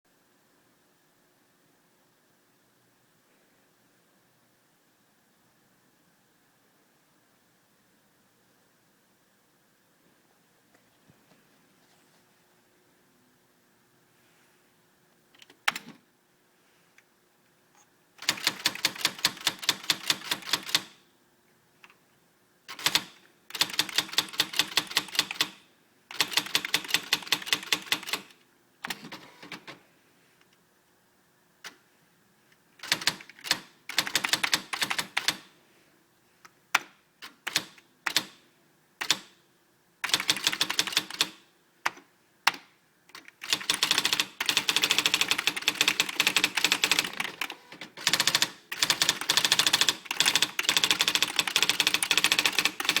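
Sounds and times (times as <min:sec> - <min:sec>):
electronic typewriter printing: 0:18.2 - 0:21.0, 0:22.7 - 0:29.8, 0:32.8 - 0:35.5, 0:39.0 - 0:39.4, 0:40.0 - 0:41.4, 0:42.5 - 0:53.0.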